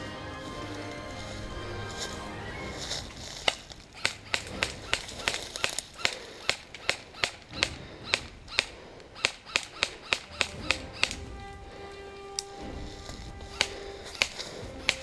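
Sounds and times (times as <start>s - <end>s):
gunshots: 3.4s - 11.5s, 12.6s - 15.0s.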